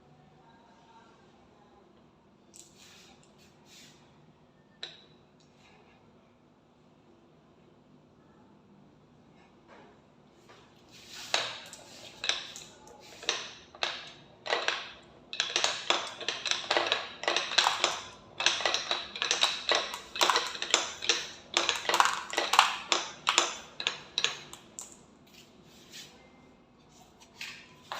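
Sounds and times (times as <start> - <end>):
marbles clattering down plastic track: 13.2 - 24.6.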